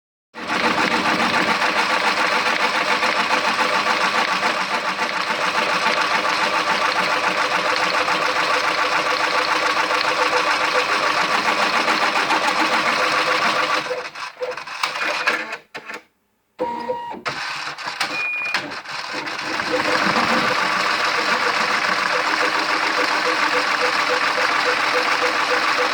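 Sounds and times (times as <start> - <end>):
machine rhythmic clatter: 0.4 - 15.6, 17.4 - 25.9
brief tones: 18.0 - 18.6.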